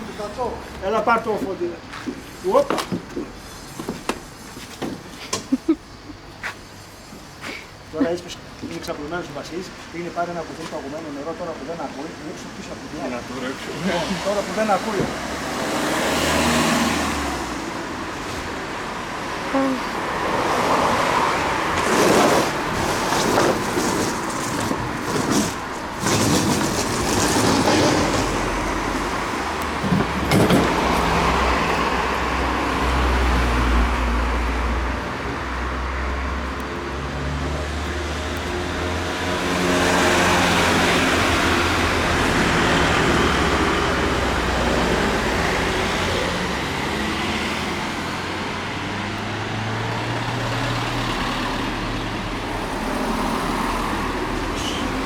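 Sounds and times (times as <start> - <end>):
knocks and clanks: 22.8 - 28.7, 29.6 - 31.9.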